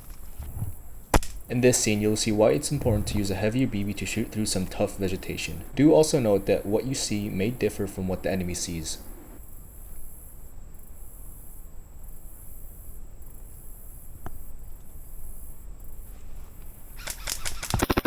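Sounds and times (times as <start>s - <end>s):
steady high hiss: 0.0s - 18.0s
sharp click: 1.1s - 1.5s, 17.0s - 18.0s
airsoft rifle rapid fire: 1.2s - 1.5s, 17.0s - 18.0s.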